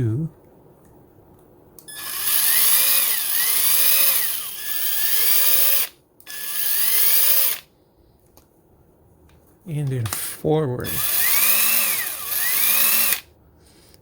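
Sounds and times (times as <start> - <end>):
impact wrench motor whine: 1.9 - 7.6, 11.0 - 13.3.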